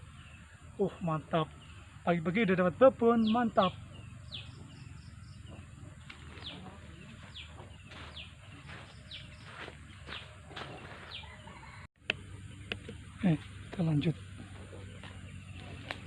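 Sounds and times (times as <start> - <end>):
bird chirping: 0.0 - 16.0
outdoor background noise: 0.0 - 16.0.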